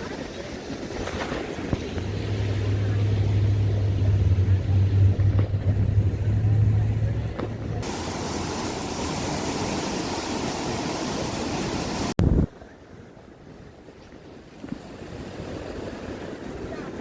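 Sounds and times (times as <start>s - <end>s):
storm wind and rain rushing: 0.7s - 12.6s
loud low thump: 1.7s - 7.8s.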